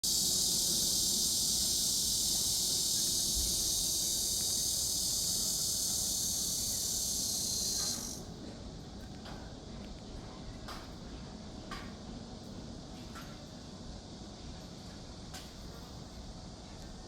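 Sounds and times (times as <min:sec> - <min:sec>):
high-pitched insect chorus: 0:00.0 - 0:08.3.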